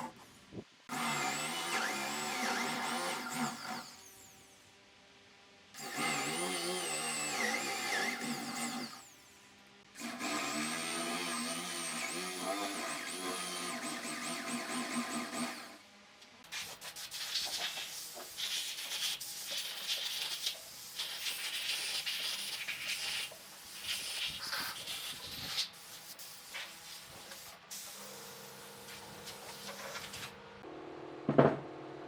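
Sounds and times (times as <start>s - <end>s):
power tool whining: 0.9s - 4.6s, 5.8s - 15.9s.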